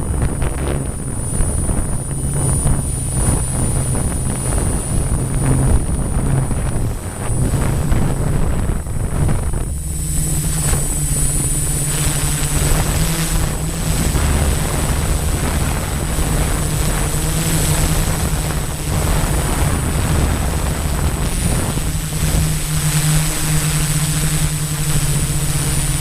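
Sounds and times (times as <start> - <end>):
multicopter drone droning: 0.0 - 26.0.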